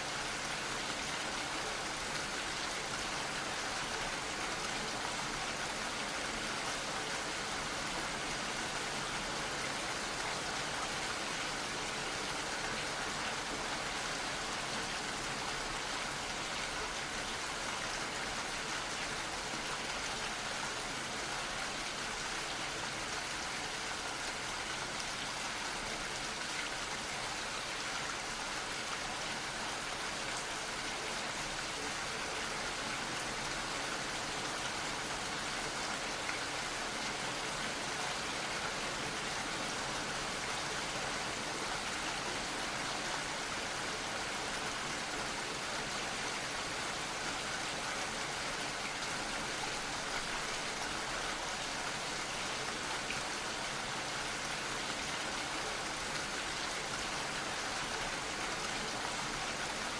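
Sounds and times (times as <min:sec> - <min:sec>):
gentle rain patter: 0:00.0 - 0:59.9.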